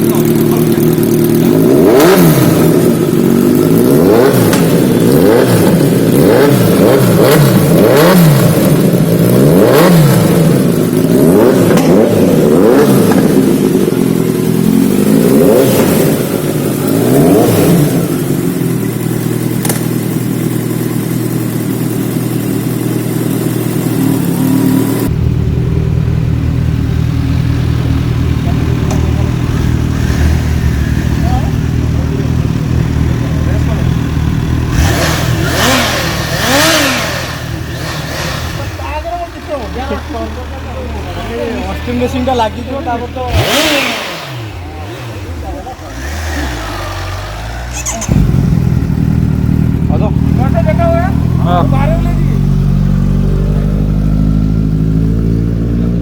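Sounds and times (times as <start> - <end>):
motorcycle engine revving and idling: 0.0 - 56.0.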